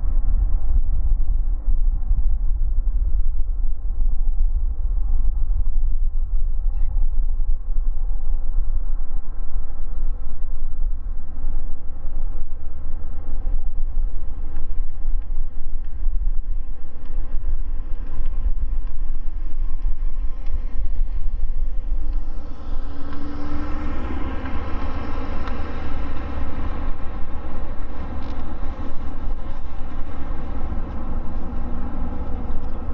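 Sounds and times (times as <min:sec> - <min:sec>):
jet engines running: 0:22.5 - 0:32.9.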